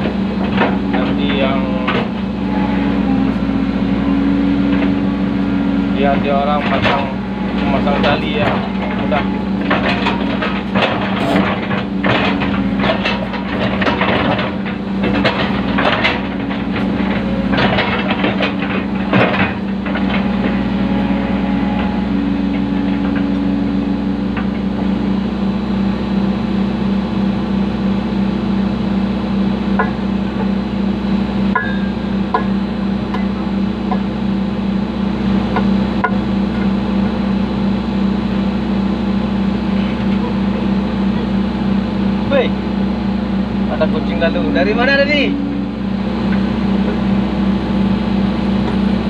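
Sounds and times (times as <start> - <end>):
knocks and clanks: 0.0 - 3.1, 6.0 - 20.7, 29.7 - 30.6, 31.5 - 34.1
diesel engine running: 0.0 - 49.0.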